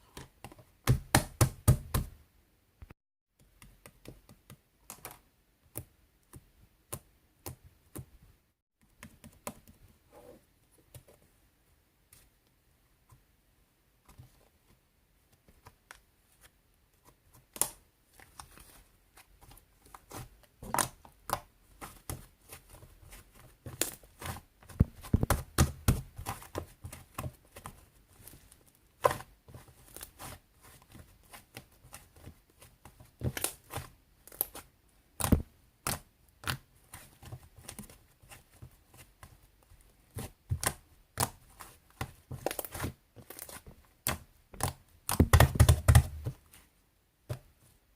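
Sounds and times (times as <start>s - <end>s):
clicks and taps: 2.8s - 8.2s, 42.0s - 46.4s.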